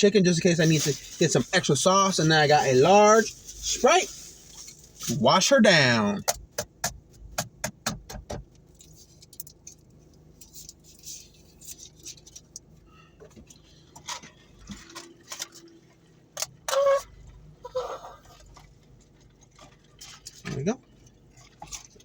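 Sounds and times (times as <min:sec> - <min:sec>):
food packaging rustling: 0:00.6 - 0:05.2.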